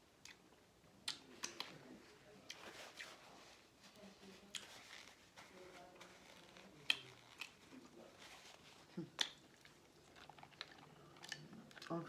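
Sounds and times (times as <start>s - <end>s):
wet chewing and lip smacking: 6.8s - 7.6s, 9.0s - 12.0s.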